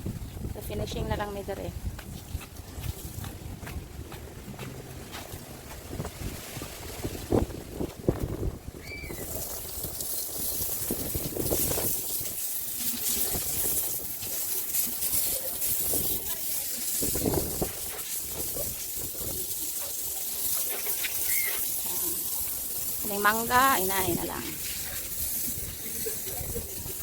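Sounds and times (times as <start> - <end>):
gusty wind: 0.0 - 12.4, 16.9 - 19.5
wind buffeting microphone: 0.0 - 14.4, 15.1 - 19.6, 22.5 - 27.0.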